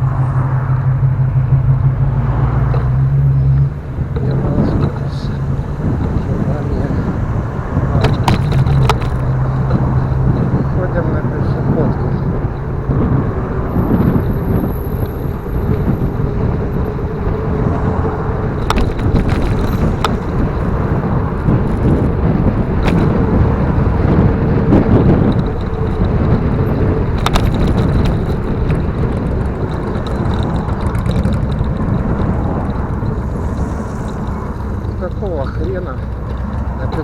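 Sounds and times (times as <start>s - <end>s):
bicycle rolling noise: 0.0s - 37.0s
wind buffeting microphone: 0.0s - 37.0s
sharp clicks or rattles: 3.6s - 12.7s, 14.9s - 37.0s.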